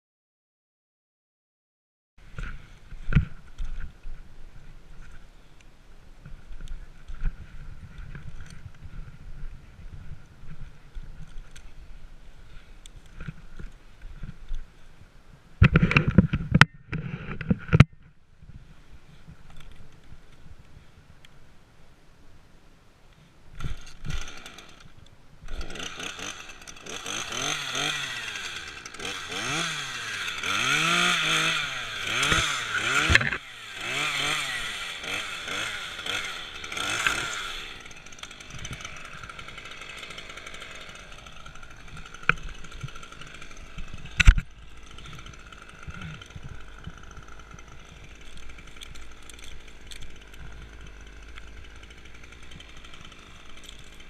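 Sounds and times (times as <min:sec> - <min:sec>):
chainsaw revving: 0:23.6 - 0:54.0.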